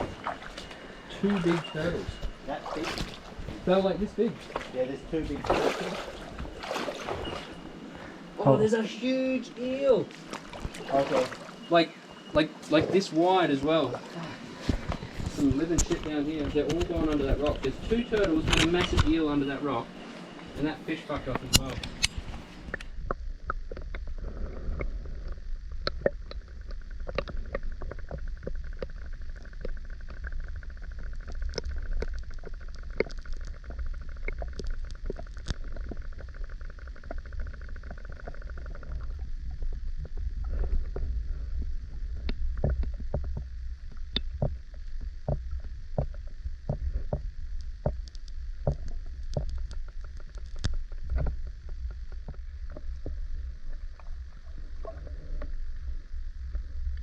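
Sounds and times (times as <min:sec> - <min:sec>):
low rumble on microphone: 0:20.6 - 0:57.0
small clicks and knocks: 0:42.2 - 0:53.2.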